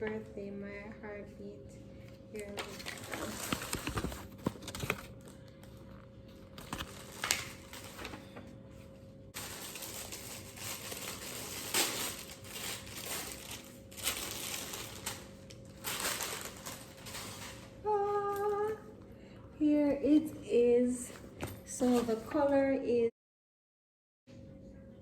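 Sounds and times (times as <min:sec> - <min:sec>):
packaging crinkling: 0:02.4 - 0:08.4, 0:09.4 - 0:17.8.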